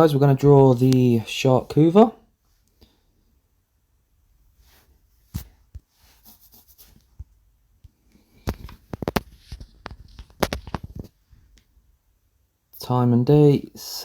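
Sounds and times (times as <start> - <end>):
clicks and taps: 7.2 - 11.7.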